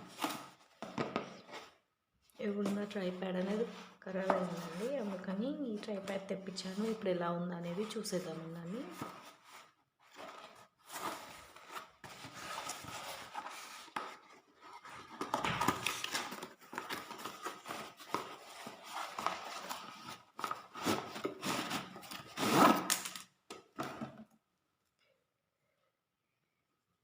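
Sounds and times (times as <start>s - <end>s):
packaging rubbing and rustling: 8.8s - 23.2s.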